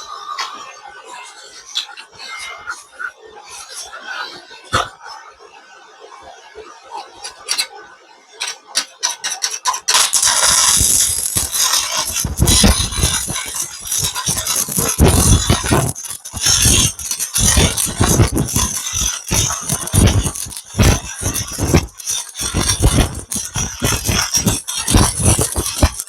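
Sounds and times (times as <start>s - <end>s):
sharp clicks: 9.9s - 26.0s
welding arc crackling: 9.9s - 26.0s.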